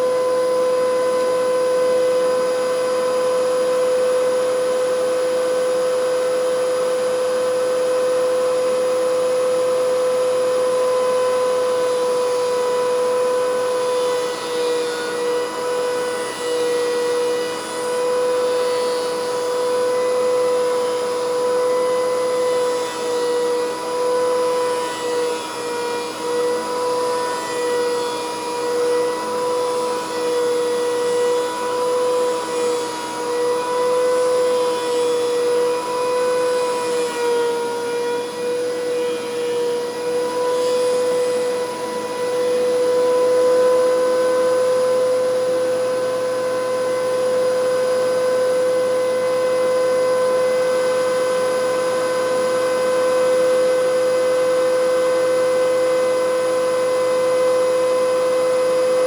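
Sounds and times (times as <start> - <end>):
thickness planer whining: 0.0 - 59.0.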